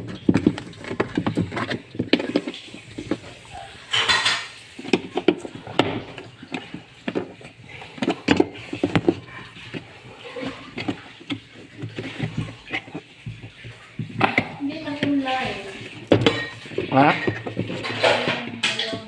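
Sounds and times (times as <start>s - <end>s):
scraping rustle: 0.0s - 19.0s
metal tools clinking: 2.2s - 5.2s, 14.2s - 19.0s.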